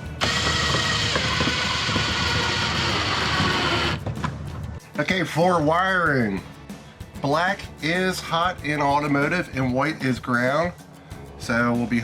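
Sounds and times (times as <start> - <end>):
power drill boring: 0.0 - 4.0.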